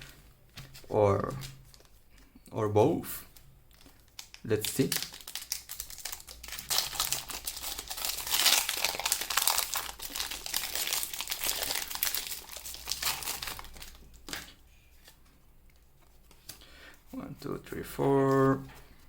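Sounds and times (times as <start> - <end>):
foil wrapper crinkling and tearing: 3.7 - 14.5.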